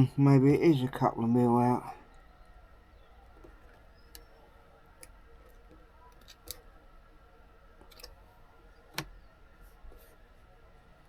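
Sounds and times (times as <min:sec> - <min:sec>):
faint steady hum: 0:00.0 - 0:11.0
small parts clicking: 0:05.0 - 0:06.6.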